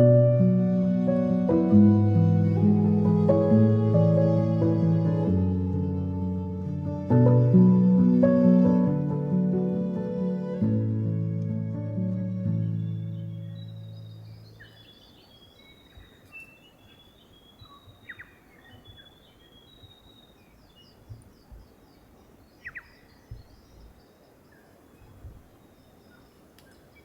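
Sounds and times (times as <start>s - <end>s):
background music: 0.0s - 14.4s
forest birds chirping: 7.9s - 27.0s.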